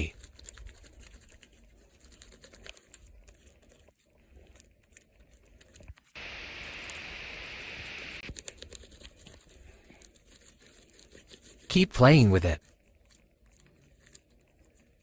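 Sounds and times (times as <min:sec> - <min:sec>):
steady hiss: 0:06.2 - 0:08.3.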